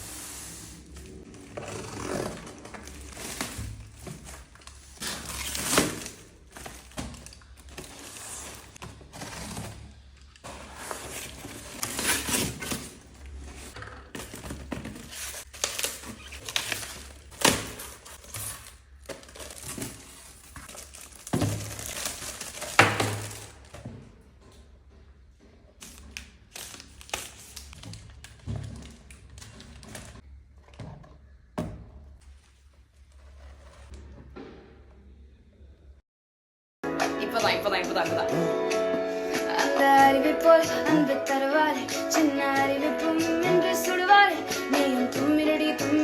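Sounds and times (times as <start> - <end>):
packaging crinkling and rustling: 0.2 - 24.0, 25.7 - 30.8.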